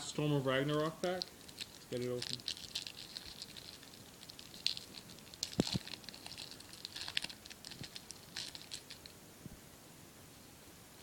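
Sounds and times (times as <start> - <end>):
foil pack crinkling: 0.7 - 9.2.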